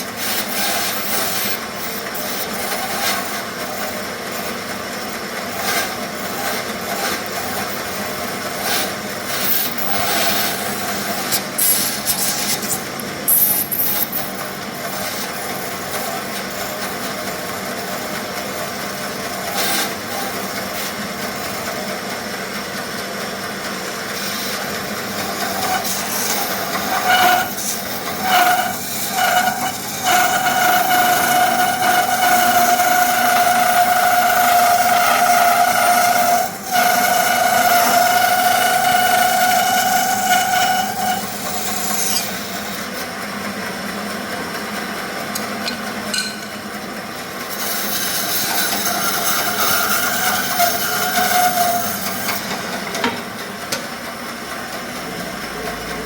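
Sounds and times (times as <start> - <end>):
bandsaw blade rasping through wood: 0.0 - 3.7, 5.5 - 16.2, 19.4 - 21.0, 24.2 - 42.8, 47.4 - 52.8
machine whine: 0.0 - 56.0.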